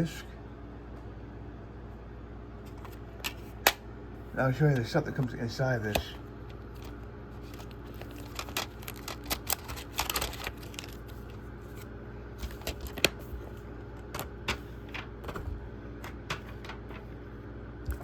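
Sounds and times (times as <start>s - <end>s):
steady low hum: 0.0s - 18.0s
paper and cardboard rustling: 6.7s - 17.2s.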